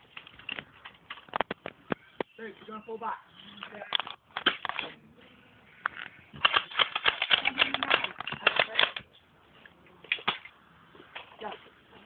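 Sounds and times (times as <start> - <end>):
airsoft guns firing: 6.4 - 9.0.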